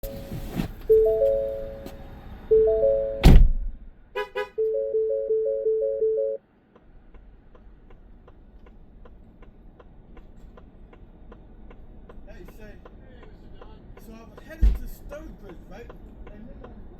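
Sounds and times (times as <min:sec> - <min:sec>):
electronic chime tones: 0:00.9 - 0:01.8, 0:02.5 - 0:03.2, 0:04.6 - 0:06.4
two-note electronic alert tone: 0:00.9 - 0:01.9, 0:02.5 - 0:03.2, 0:04.6 - 0:06.4
loud thump: 0:03.2 - 0:03.8.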